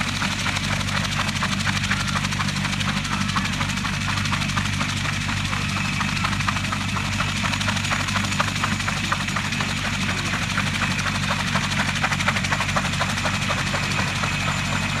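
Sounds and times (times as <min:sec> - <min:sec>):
helicopter engine whine: 0:00.0 - 0:15.0
helicopter rotor beat: 0:00.0 - 0:15.0.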